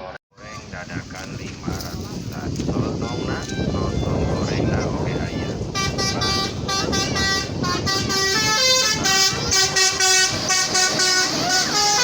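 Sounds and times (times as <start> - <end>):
engine and road noise: 0.0 - 12.0
multi-tone air horn tune: 5.3 - 12.0.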